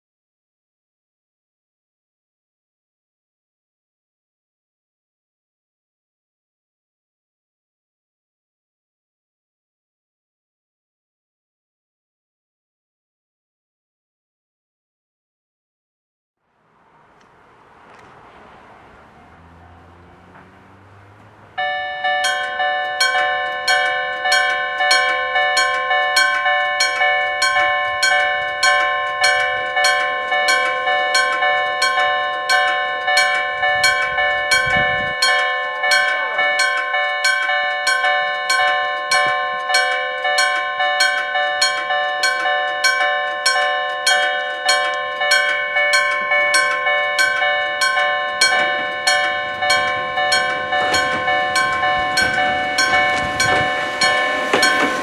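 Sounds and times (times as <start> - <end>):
electronic crossing warning tone: 19.4 - 55.0
electric gong ringing fast: 21.6 - 55.0.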